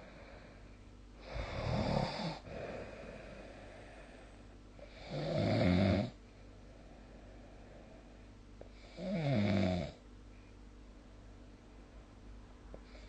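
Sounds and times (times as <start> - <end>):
person snoring: 1.2 - 6.2, 8.8 - 10.0.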